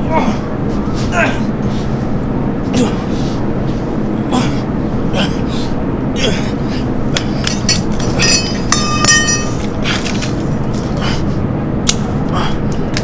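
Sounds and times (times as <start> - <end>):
steady low rumble: 0.0 - 13.0
ringing clink: 7.4 - 9.8.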